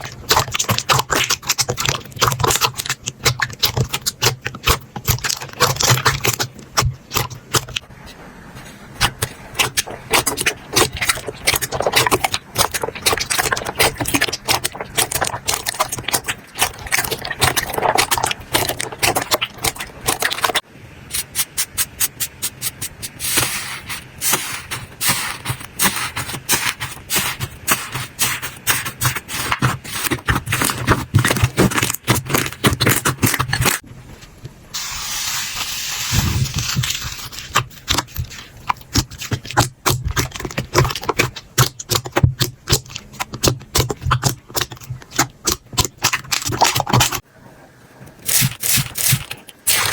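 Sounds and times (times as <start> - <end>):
slime clicking and popping: 0.0 - 7.8, 9.0 - 20.6, 37.6 - 47.2.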